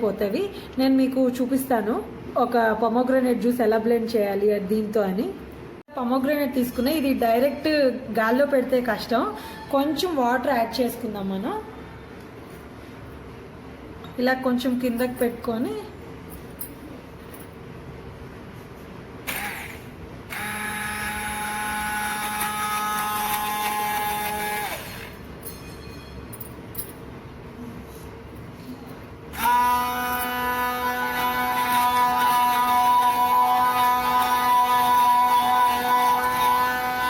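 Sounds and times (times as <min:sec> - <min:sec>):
hand blender motor whirring: 0:19.3 - 0:25.2, 0:29.3 - 0:37.0.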